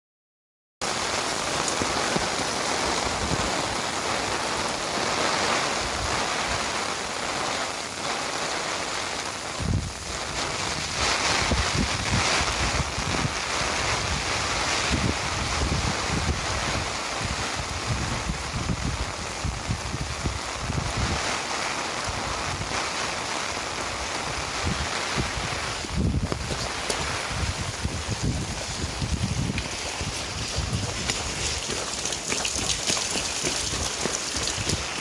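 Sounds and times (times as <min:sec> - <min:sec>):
rain hissing: 0:00.8 - 0:35.0
wind buffeting microphone: 0:09.4 - 0:35.0.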